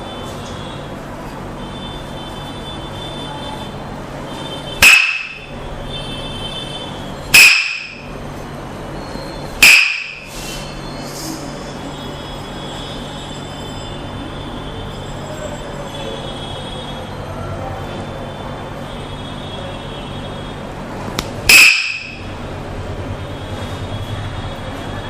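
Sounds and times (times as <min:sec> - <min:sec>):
sharp knocks with ringing tail: 0:04.8 - 0:05.5, 0:07.4 - 0:08.0.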